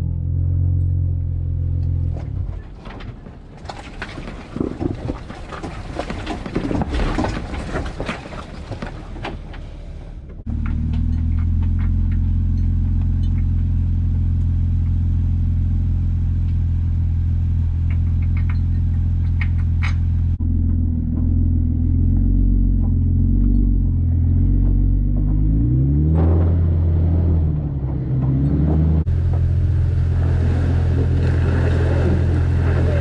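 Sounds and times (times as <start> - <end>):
low engine drone: 0.0 - 4.2, 9.0 - 33.0
rough clattering noise: 2.1 - 13.7, 17.8 - 29.5.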